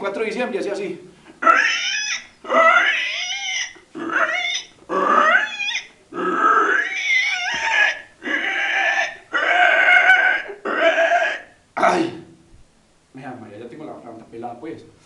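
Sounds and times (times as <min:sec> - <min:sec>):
man imitating pig squeals: 0:01.4 - 0:12.3.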